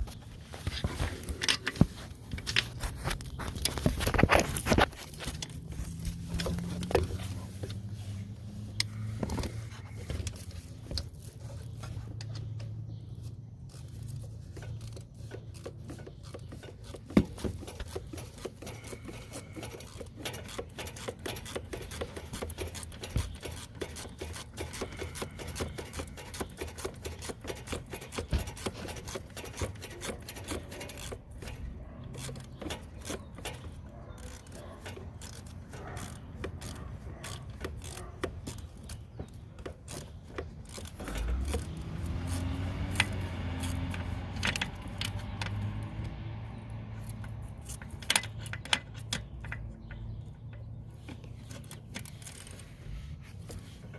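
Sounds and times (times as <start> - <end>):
socket ratchet clicking: 13.7 - 46.2.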